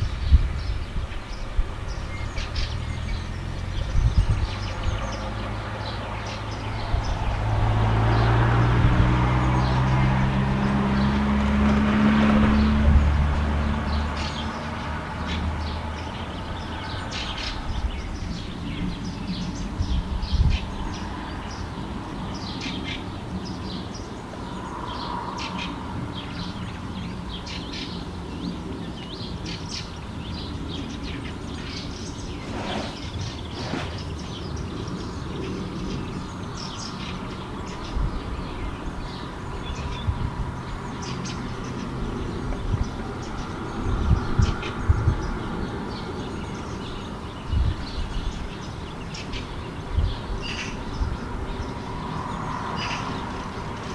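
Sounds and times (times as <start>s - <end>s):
birds chirping: 0.0s - 53.9s.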